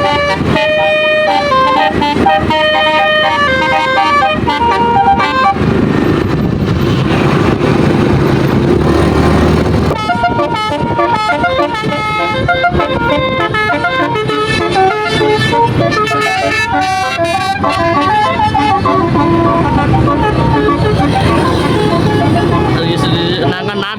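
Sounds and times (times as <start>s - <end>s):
multi-tone air horn melody: 0.0s - 5.7s, 9.9s - 23.9s
loud rushing noise: 0.0s - 23.8s.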